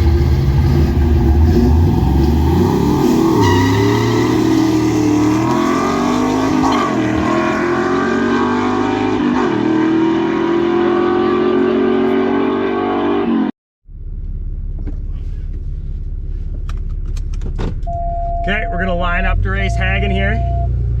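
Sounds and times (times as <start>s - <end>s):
engine accelerating hard: 0.0s - 16.0s.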